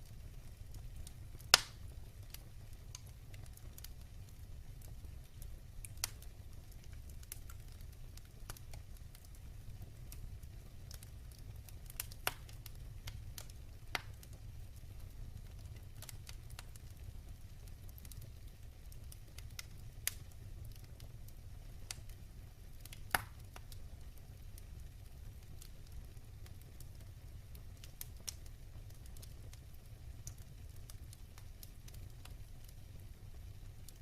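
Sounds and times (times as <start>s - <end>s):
fire crackling and popping: 0.0s - 34.0s
fire rumbling: 0.0s - 34.0s.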